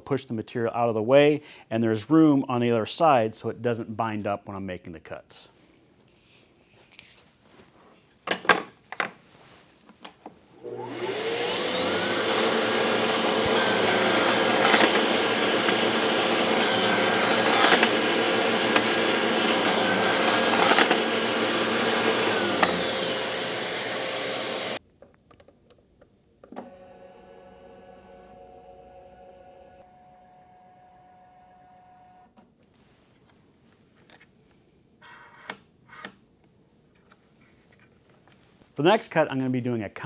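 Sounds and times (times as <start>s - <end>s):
table saw motor running: 10.6s - 24.8s
saw blade crosscutting: 10.8s - 24.8s.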